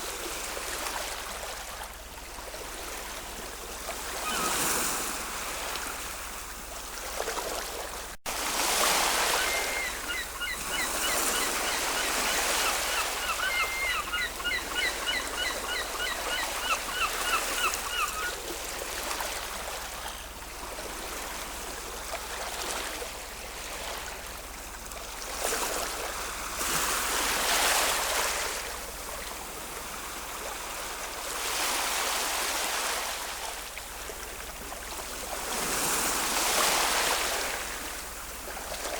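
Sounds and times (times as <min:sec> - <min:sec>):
ocean waves washing: 0:00.0 - 0:38.9
bird chirping: 0:09.4 - 0:18.3.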